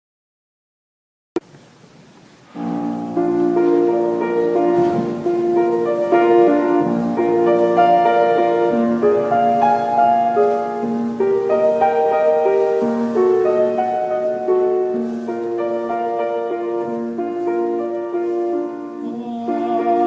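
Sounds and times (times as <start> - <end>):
slow gentle piano music: 2.5 - 20.0.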